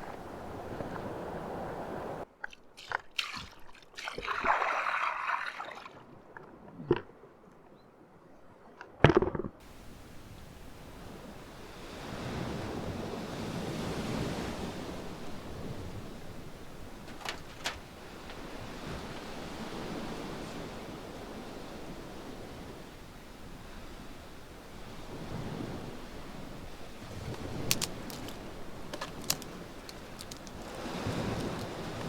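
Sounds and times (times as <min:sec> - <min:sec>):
sea waves washing onto beach: 0:00.0 - 0:02.2, 0:09.6 - 0:32.0
short rustle: 0:15.4 - 0:19.7, 0:27.0 - 0:32.0
handling clicks: 0:27.3 - 0:32.0.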